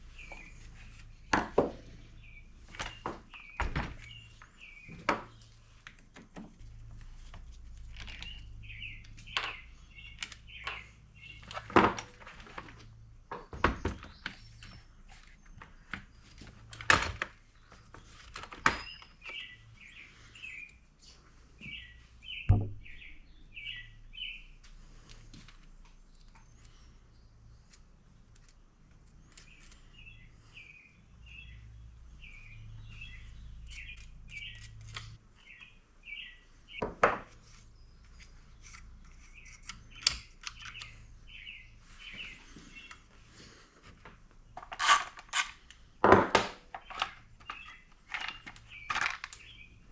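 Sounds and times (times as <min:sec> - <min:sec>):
bird chirping: 0:00.0 - 0:05.6, 0:08.0 - 0:12.2, 0:17.6 - 0:24.6, 0:29.0 - 0:43.5, 0:46.7 - 0:49.9
tools clinking and knocking: 0:44.6 - 0:48.3.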